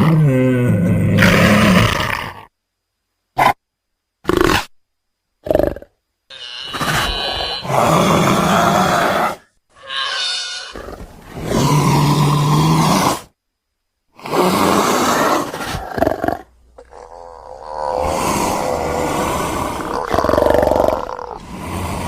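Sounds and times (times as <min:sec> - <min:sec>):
creature growling roars: 0:06.3 - 0:13.3, 0:14.2 - 0:22.0.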